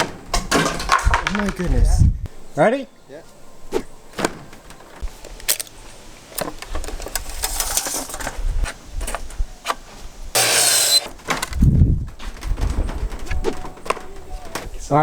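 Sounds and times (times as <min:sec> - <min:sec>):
nail gun firing: 0:10.4 - 0:11.1.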